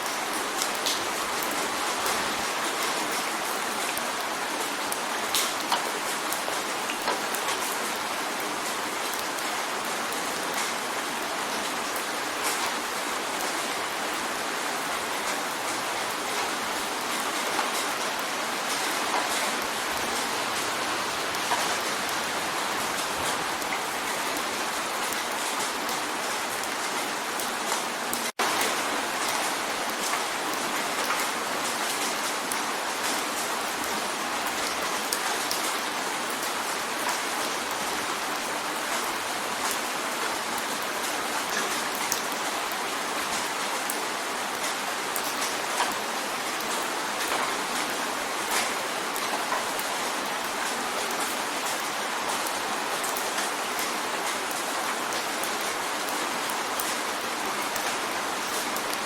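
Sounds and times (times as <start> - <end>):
rain drumming on a window: 0.0 - 59.0.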